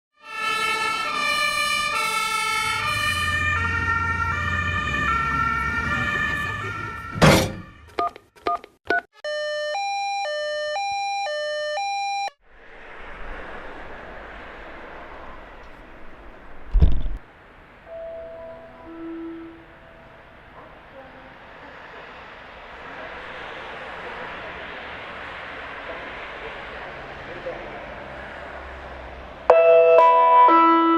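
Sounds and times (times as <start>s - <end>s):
emergency vehicle two-tone horn: 0.2s - 8.0s, 9.2s - 11.9s, 17.9s - 20.0s, 29.5s - 30.9s
low engine rumble: 12.4s - 29.4s.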